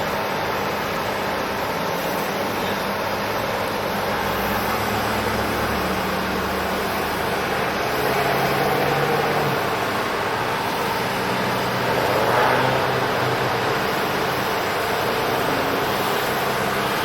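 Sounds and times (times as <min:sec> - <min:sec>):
engine and traffic noise: 0:00.0 - 0:17.0
low hum shifting in pitch: 0:04.6 - 0:16.8.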